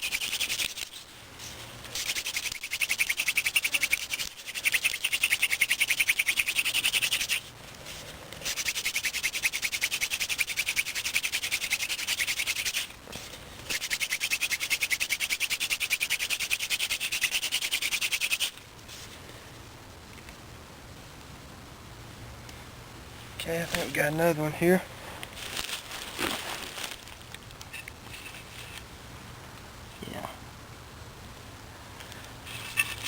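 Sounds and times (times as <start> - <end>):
hand drill squeaking rasp: 0.0 - 1.1, 1.9 - 7.5, 8.4 - 13.0, 13.7 - 18.6, 32.5 - 33.0.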